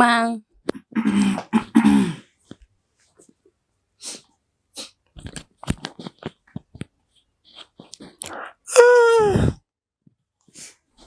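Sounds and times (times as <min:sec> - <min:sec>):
breathy puffs and sniffs: 0:04.0 - 0:05.0
person imitating dog barking: 0:08.6 - 0:09.6.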